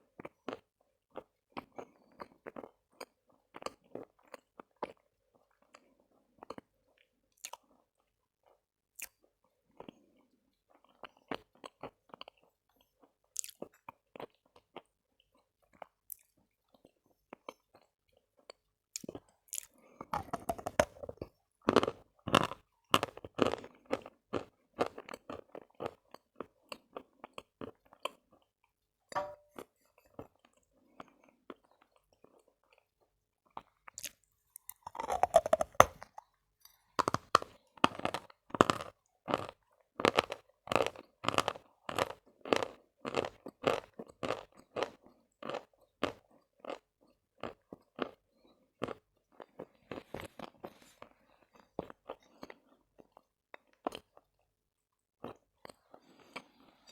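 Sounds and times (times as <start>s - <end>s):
crunching and chewing chalk: 8.4s - 28.5s, 30.3s - 54.4s.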